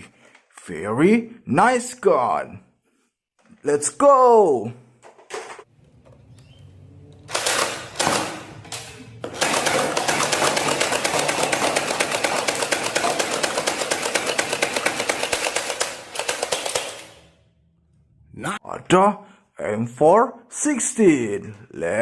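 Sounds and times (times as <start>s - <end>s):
simulated automatic gunfire: 9.3s - 17.4s.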